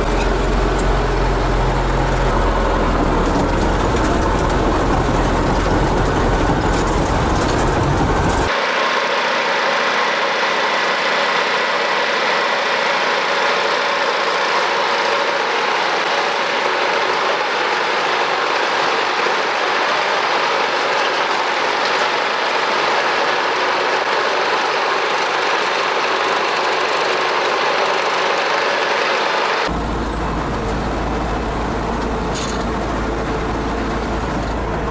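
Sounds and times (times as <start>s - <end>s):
bulldozer diesel engine running: 0.0s - 34.9s.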